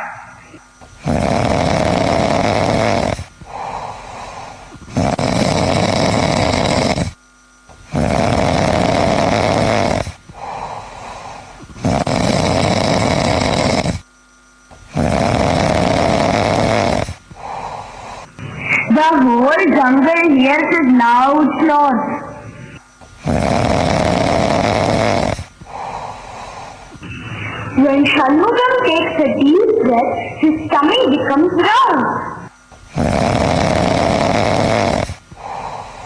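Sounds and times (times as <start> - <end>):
loud snoring: 0.0 - 14.1, 14.7 - 36.0
soft breaths: 0.3 - 14.1, 14.7 - 19.1, 22.3 - 29.2, 32.4 - 36.0.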